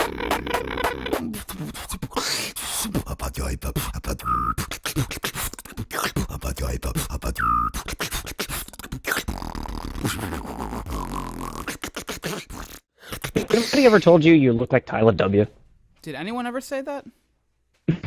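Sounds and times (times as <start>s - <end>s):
person beatboxing: 0.0s - 14.0s
pitched vocal swoops: 0.0s - 14.0s.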